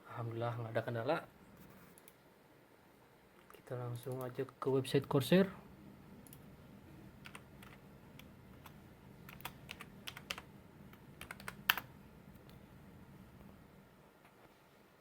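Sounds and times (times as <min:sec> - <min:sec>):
computer keyboard key clicks: 0:08.6 - 0:10.4, 0:11.2 - 0:11.9.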